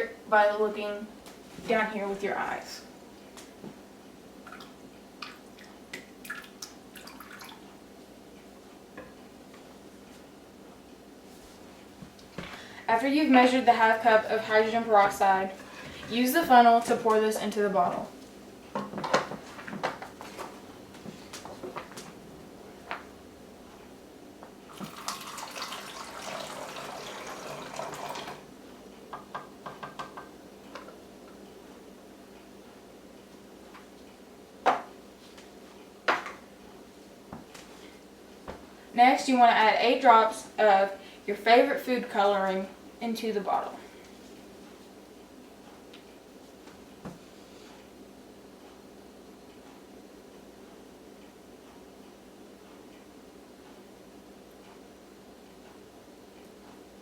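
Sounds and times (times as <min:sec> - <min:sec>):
low steady hiss: 0:00.0 - 0:57.0
liquid pouring and splashing: 0:05.6 - 0:07.7, 0:24.7 - 0:28.5.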